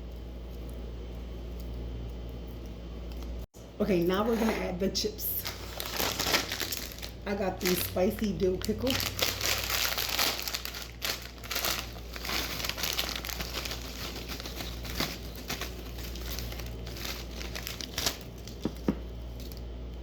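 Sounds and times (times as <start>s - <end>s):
chip bag crinkling: 5.2s - 19.7s
chips rustling: 5.3s - 19.7s.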